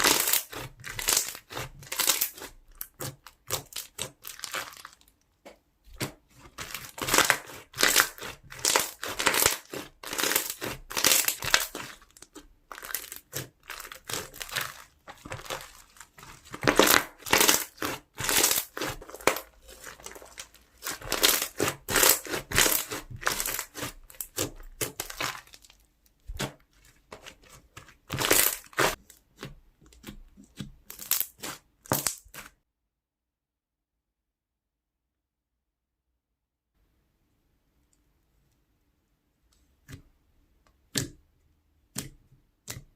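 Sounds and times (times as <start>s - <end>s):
slime crackling and crunching: 0.0s - 5.2s, 5.9s - 30.2s, 30.9s - 32.6s.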